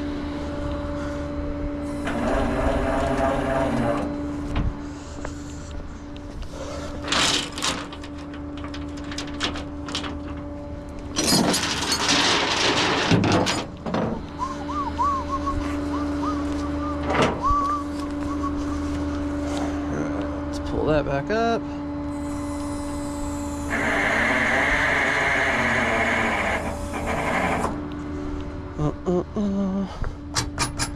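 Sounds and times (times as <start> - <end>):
steel chain clanking and rattling: 6.9 - 10.5, 11.1 - 14.2.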